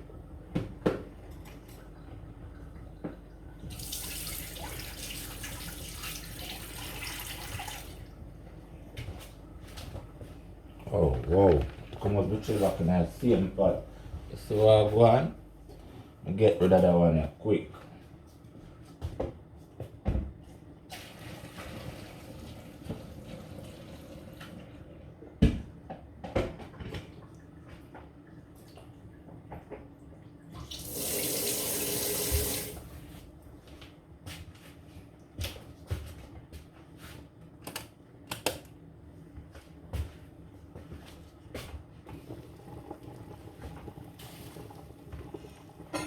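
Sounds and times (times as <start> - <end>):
kitchen tap running into sink: 3.6 - 8.0, 30.6 - 32.9
pots clattering in sink: 43.7 - 46.0.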